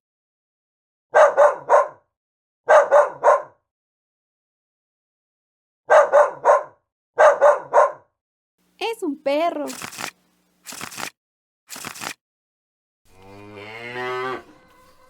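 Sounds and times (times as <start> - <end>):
dog barking: 1.1 - 2.1, 2.7 - 3.6, 5.9 - 8.1.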